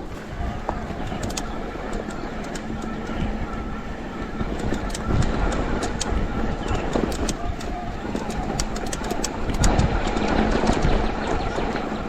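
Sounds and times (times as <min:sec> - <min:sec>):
bike rattling over rough ground: 0:00.0 - 0:12.0
electric bike motor whirring: 0:00.0 - 0:12.0.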